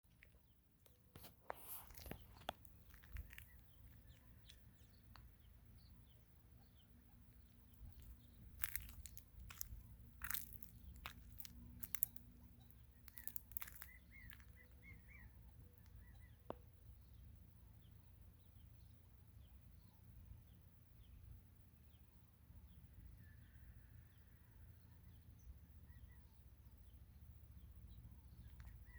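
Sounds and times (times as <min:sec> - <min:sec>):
sharp crunching clicks: 0:00.1 - 0:05.3, 0:07.7 - 0:15.2
faint bird chirps: 0:01.7 - 0:28.9.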